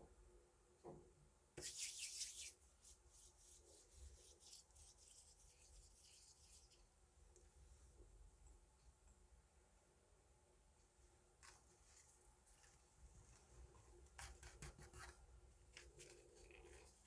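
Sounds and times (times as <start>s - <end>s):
playing cards sliding and rubbing: 1.6s - 6.7s.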